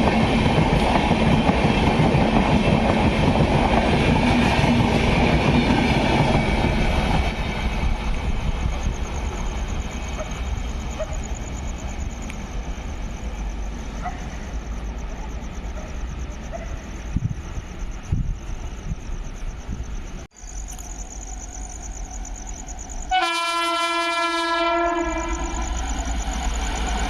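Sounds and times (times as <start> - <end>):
train wheels clattering on rails: 0.0 - 13.2.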